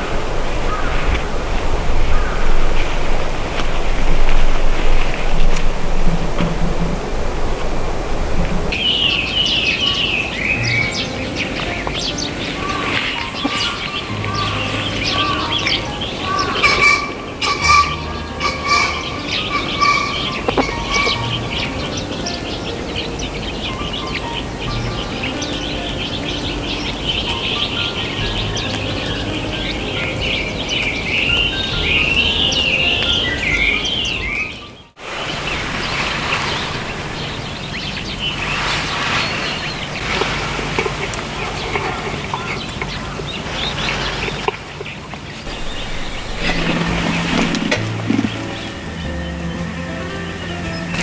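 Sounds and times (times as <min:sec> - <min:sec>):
outdoor ambient noise: 0:00.0 - 0:51.0
small birds chirping: 0:00.0 - 0:51.0
soft background music: 0:08.7 - 0:35.0, 0:45.5 - 0:51.0.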